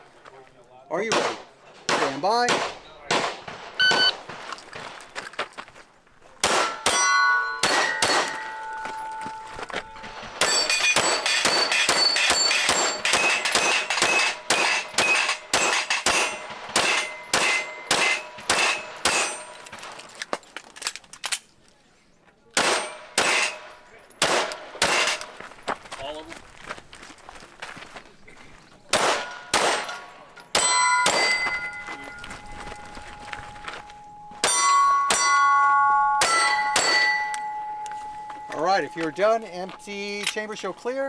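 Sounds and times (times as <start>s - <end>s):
rapid pistol shots: 1.0s - 5.0s, 6.4s - 8.7s, 9.9s - 20.0s, 22.6s - 25.4s, 28.9s - 31.8s
steel targets ringing: 2.0s - 4.3s, 6.4s - 20.0s, 22.6s - 25.4s, 29.0s - 41.0s.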